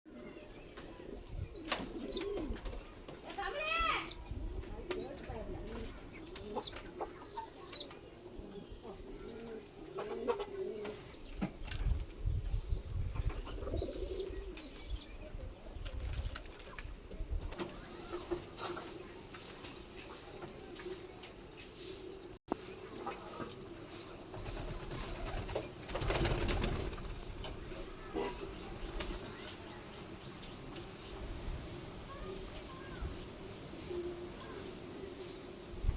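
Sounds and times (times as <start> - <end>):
pigeons cooing: 0.1 - 3.1, 3.9 - 11.2, 13.2 - 14.8.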